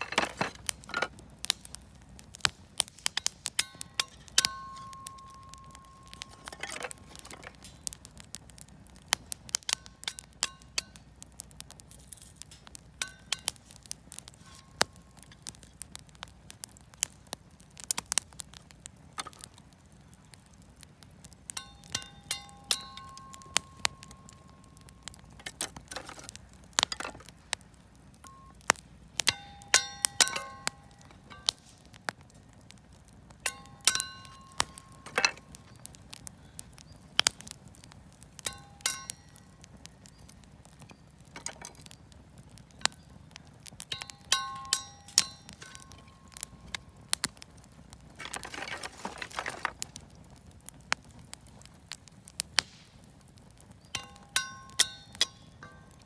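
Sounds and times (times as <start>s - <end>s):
campfire crackling and popping: 0.0s - 56.0s
clear clinking ringing tones: 3.6s - 7.8s, 21.6s - 26.1s, 28.2s - 32.0s, 33.5s - 35.9s, 38.5s - 40.2s, 43.9s - 47.1s, 54.0s - 56.0s.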